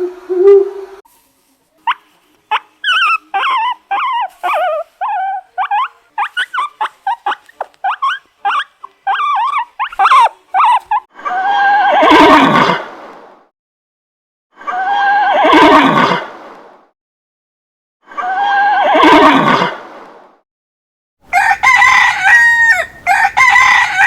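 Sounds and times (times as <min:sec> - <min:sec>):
horse whinny: 0:18.5 - 0:19.7.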